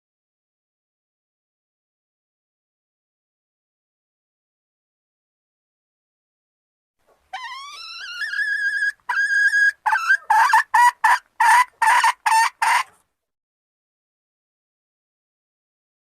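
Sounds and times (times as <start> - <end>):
junglefowl hen calling: 7.3 - 13.0.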